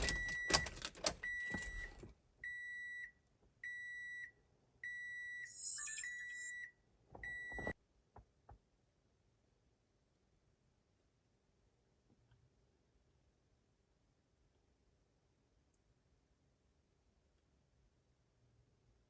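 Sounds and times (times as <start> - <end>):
electronic car chime beeping: 0.0 - 3.0.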